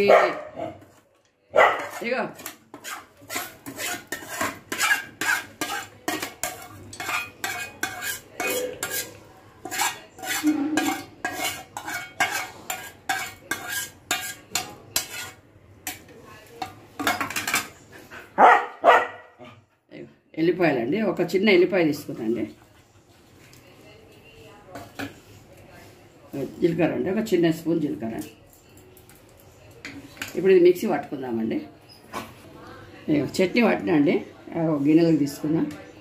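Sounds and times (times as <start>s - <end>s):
metal spoon scraping a pan: 1.8s - 18.2s, 24.5s - 30.6s.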